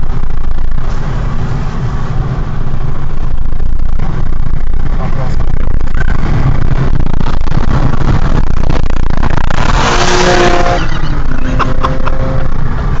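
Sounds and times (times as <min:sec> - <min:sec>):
car engines running hard: 0:00.0 - 0:13.0
wind buffeting microphone: 0:02.8 - 0:11.4.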